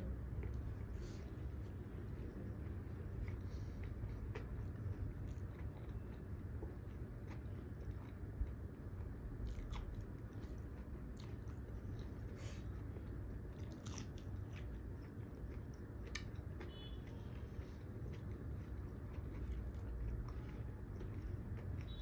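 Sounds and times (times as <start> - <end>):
person chewing food: 0.0 - 22.0.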